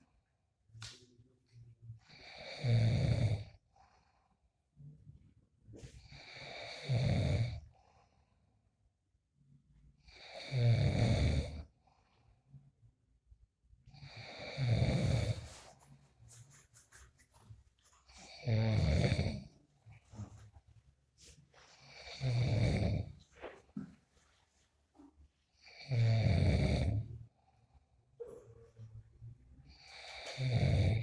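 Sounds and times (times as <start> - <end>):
man snoring: 2.1 - 3.6, 6.1 - 7.6, 10.2 - 11.6, 14.0 - 15.4, 18.3 - 19.5, 21.9 - 23.1, 25.7 - 27.1, 29.8 - 31.0.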